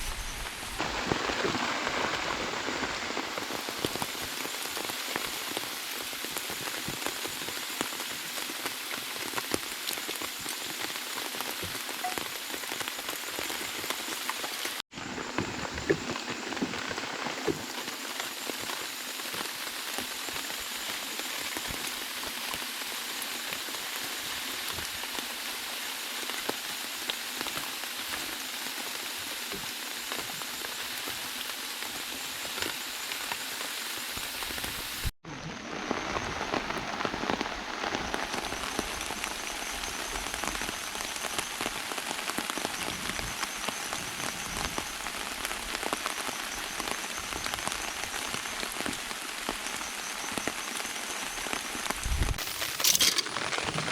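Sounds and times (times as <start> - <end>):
steady rain falling: 0.0 - 53.9
raindrops ticking: 0.2 - 22.8.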